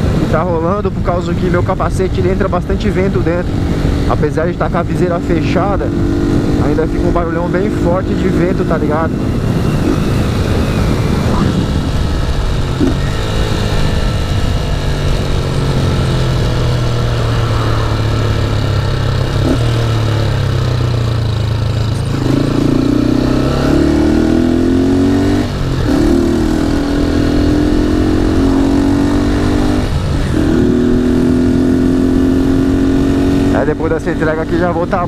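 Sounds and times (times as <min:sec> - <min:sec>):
wind noise in helmet: 0:00.0 - 0:04.9, 0:07.3 - 0:22.1, 0:25.3 - 0:33.5
motorcycle engine running: 0:00.0 - 0:35.0.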